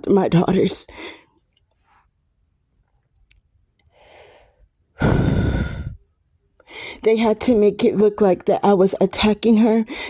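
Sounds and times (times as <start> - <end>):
person inhaling: 4.0 - 6.0
person sighing heavily: 5.0 - 6.0.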